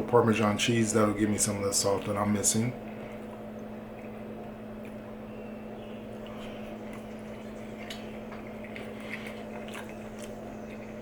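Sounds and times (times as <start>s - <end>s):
low room hum: 0.0s - 11.0s
chewing and wet clicks: 2.8s - 5.2s, 5.9s - 11.0s.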